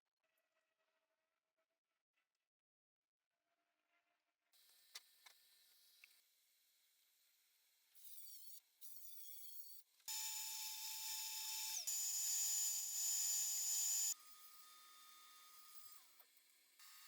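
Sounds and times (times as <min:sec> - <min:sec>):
power tool motor whining: 0:10.1 - 0:16.2.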